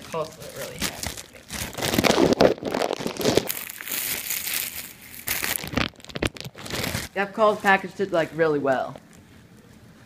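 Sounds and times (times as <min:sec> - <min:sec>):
packaging crinkling: 0:00.0 - 0:07.8
sharp crackles: 0:00.0 - 0:07.8.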